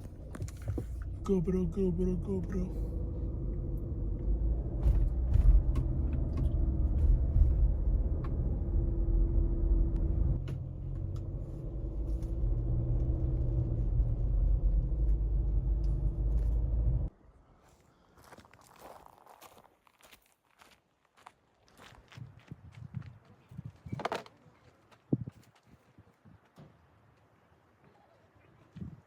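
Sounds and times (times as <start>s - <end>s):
car engine and tyres rumbling: 0.0s - 17.2s.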